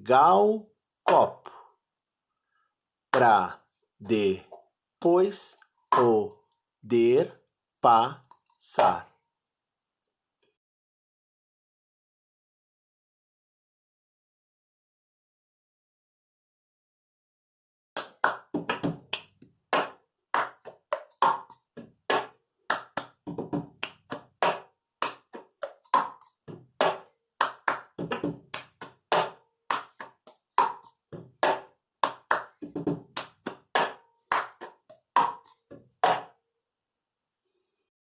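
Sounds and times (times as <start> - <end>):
hand claps: 1.1 - 1.6, 3.2 - 3.4, 18.0 - 36.4.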